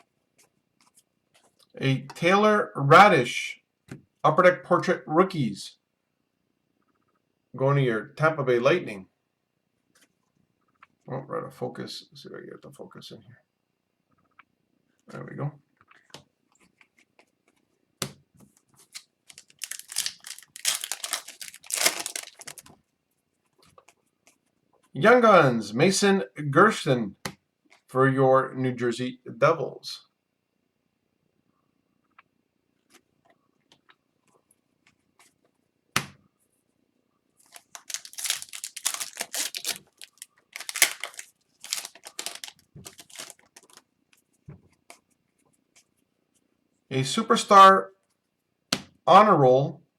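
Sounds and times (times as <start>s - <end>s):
foil wrapper crinkling and tearing: 18.9s - 22.7s, 37.5s - 43.8s.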